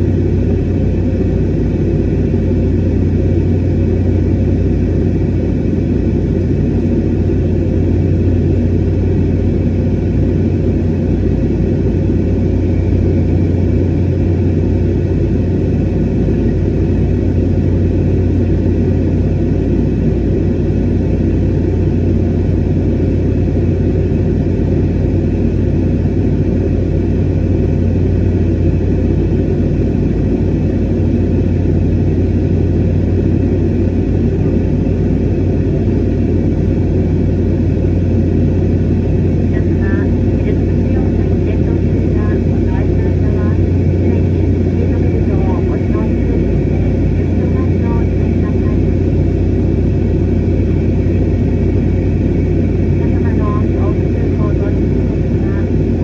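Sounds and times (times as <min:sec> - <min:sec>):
jet engine cabin roar: 0:00.0 - 0:56.0.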